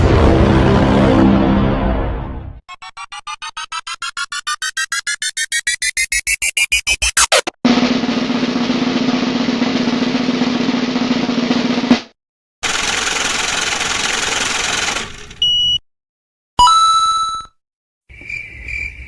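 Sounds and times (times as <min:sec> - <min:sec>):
rising pulse riser: 0:02.7 - 0:07.6.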